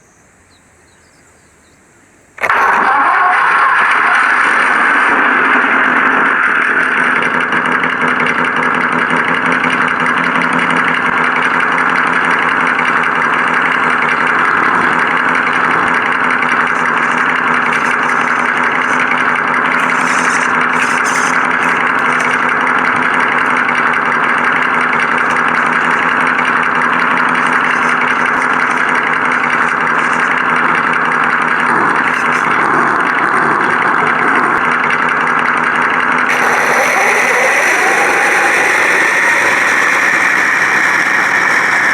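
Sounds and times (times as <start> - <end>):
simulated car engine idling: 0.0 - 41.9.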